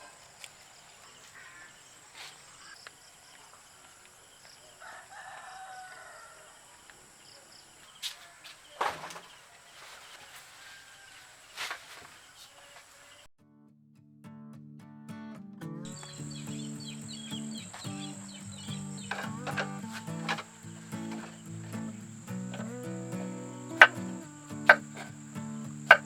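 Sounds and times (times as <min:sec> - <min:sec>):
rooster crowing: 0:04.7 - 0:06.8, 0:10.2 - 0:11.7, 0:19.0 - 0:21.4.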